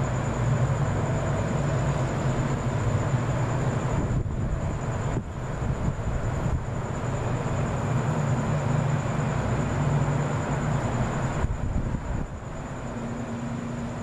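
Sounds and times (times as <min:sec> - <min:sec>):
faint high-pitched whine: 0:00.0 - 0:14.0.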